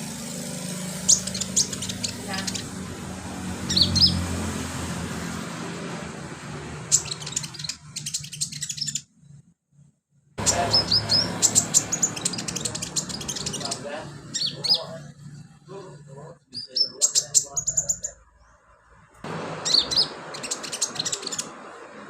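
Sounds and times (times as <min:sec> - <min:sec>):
bird singing high chips and trills: 0:00.0 - 0:04.4, 0:06.8 - 0:09.1, 0:10.4 - 0:15.4, 0:16.5 - 0:18.6, 0:19.6 - 0:21.6.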